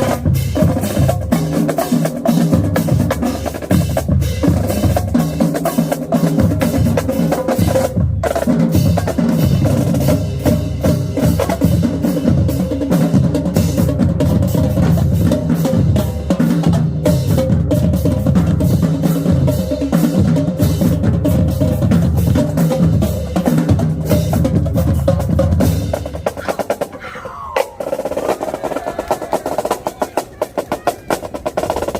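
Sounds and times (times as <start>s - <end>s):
snare drums rolling: 0.0s - 31.9s.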